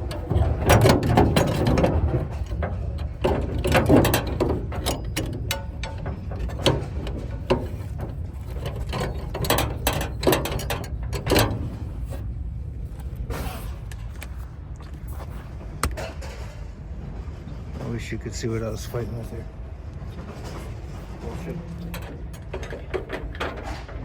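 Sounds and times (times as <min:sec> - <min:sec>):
metallic lock clicks and knocks: 0:00.0 - 0:12.3, 0:15.8 - 0:16.2, 0:21.7 - 0:24.0.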